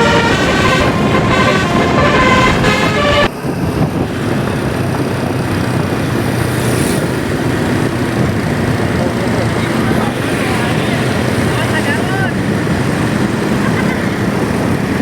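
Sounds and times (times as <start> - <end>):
musical bus air horn: 0.0 - 3.3
bus engine and road noise: 0.0 - 15.0.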